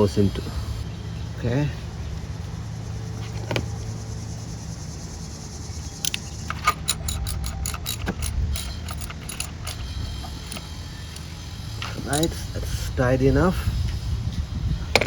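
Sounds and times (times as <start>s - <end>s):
socket wrench ratchet clicking: 6.0s - 12.5s.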